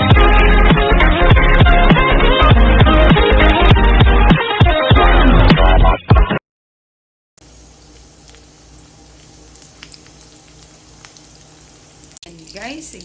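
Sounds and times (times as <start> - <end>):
eggplant frying in oil: 7.4 - 13.0.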